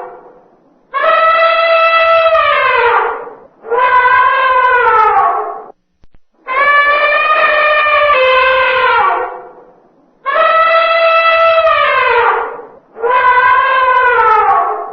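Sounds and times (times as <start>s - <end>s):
elephant moaning calls: 1.0s - 5.7s, 10.3s - 14.9s.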